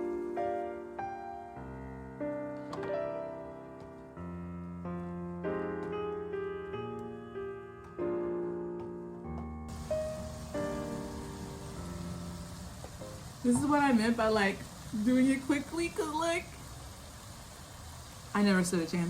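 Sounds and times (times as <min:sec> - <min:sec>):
slow piano music: 0:00.0 - 0:14.9.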